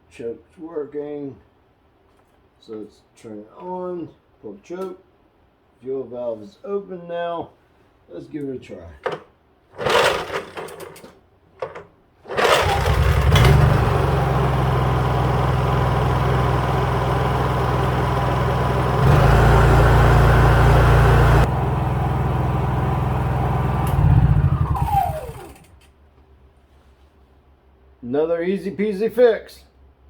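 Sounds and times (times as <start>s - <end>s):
generator engine running: 9.8s - 10.9s, 12.3s - 25.9s
engine winding down: 9.8s - 11.0s, 12.3s - 25.9s.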